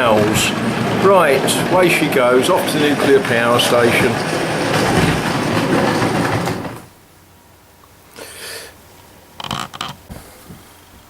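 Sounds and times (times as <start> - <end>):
model train rattling on track: 0.0 - 7.0.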